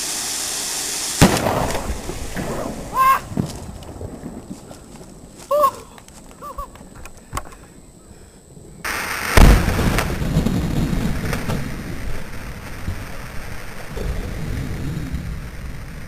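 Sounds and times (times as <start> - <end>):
explosion boom: 1.2 - 4.5, 9.3 - 16.0.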